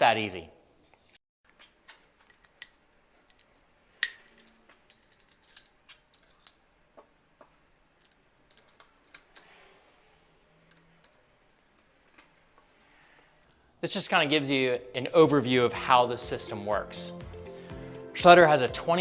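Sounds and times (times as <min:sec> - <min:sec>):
cable clip clicking and rattling: 0:01.5 - 0:06.6, 0:08.0 - 0:09.5, 0:11.8 - 0:12.5.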